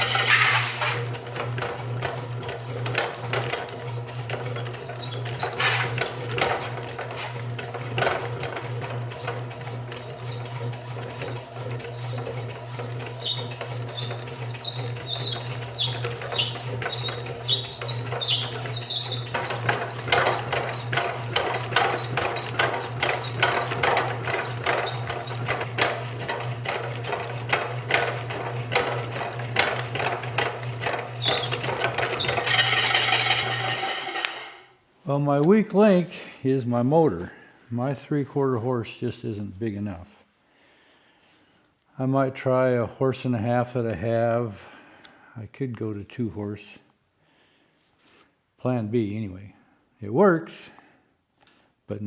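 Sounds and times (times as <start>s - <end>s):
squeaks: 0.0s - 1.1s, 2.9s - 8.6s, 9.2s - 25.4s, 31.1s - 34.7s
electric motor hum: 0.0s - 26.2s, 29.3s - 34.7s.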